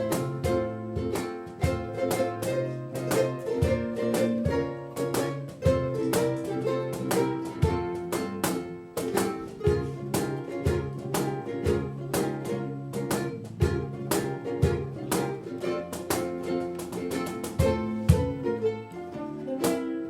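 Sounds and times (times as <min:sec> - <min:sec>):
ukulele strummed chords: 0:00.0 - 0:20.0.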